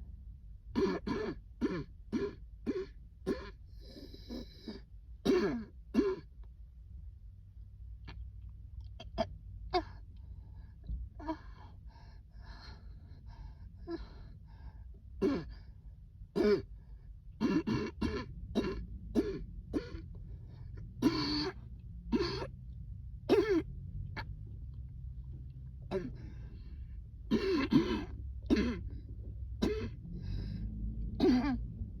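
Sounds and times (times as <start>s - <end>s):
person coughing: 0.8s - 3.6s, 4.3s - 6.3s, 15.2s - 15.6s, 16.4s - 16.7s, 17.4s - 20.1s, 21.0s - 22.5s, 23.3s - 23.7s, 25.9s - 26.3s, 27.3s - 29.0s, 29.6s - 30.0s, 31.2s - 31.6s.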